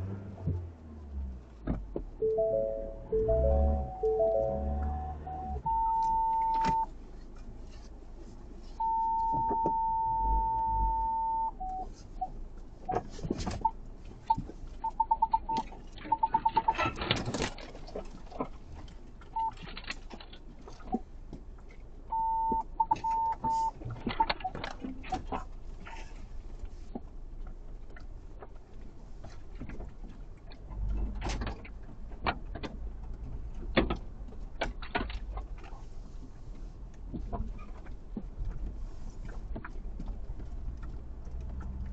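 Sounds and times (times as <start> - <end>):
long electronic tone: 2.2 - 6.8.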